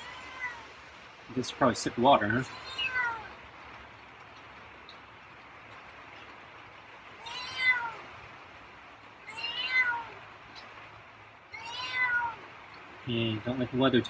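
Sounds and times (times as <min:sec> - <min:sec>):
cat meowing: 0:00.0 - 0:00.8, 0:02.4 - 0:03.4, 0:07.2 - 0:08.0, 0:09.2 - 0:10.2, 0:11.5 - 0:12.5.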